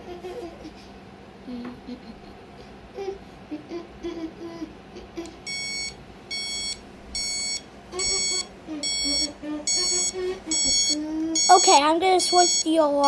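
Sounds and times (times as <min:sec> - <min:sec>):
alarm clock beeping: 0:05.5 - 0:13.0.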